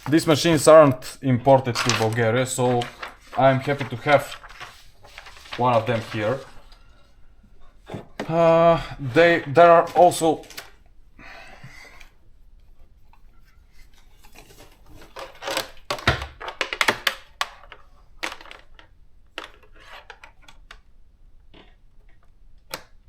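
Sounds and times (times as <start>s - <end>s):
plastic clicks and knocks: 15.0s - 23.0s.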